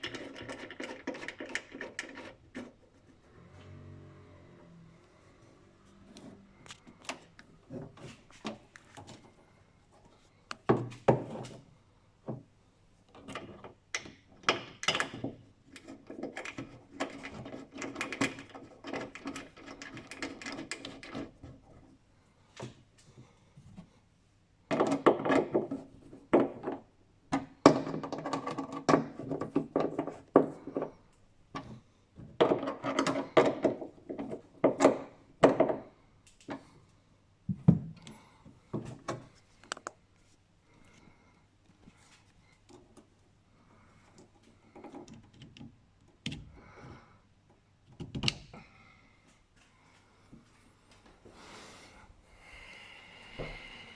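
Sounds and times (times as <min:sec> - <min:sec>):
tools clicking knocking and rattling: 0:00.0 - 0:02.8, 0:13.1 - 0:21.8, 0:24.7 - 0:35.9.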